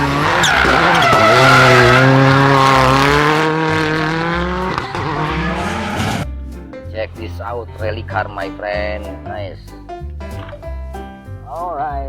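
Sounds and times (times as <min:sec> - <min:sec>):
racing car engine at high revs: 0:00.0 - 0:06.2.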